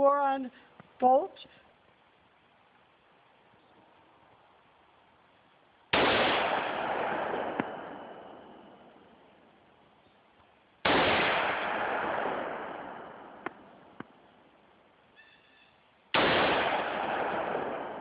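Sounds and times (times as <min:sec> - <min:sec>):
gunshots with echo: 0:05.9 - 0:08.8, 0:10.8 - 0:13.8, 0:16.1 - 0:18.0.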